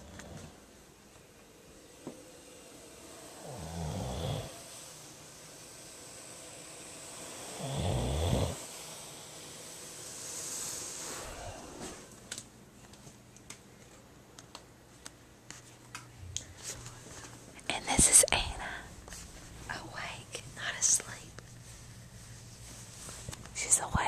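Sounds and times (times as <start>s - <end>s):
hissing breath: 1.2s - 12.2s
person snoring: 1.8s - 12.1s.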